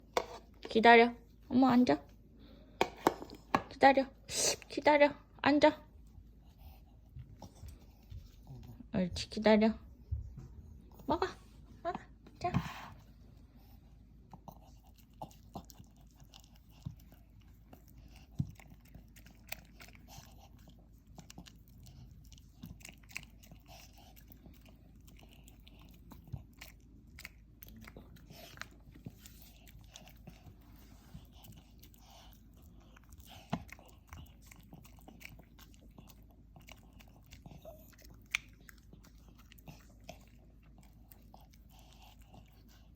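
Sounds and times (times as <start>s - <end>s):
dog chewing: 13.6s - 42.9s.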